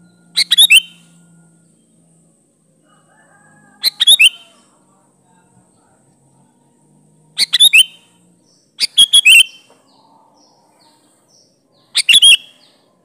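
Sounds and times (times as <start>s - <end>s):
faint bird chirps: 0.0s - 2.2s, 3.2s - 4.7s, 7.4s - 13.0s.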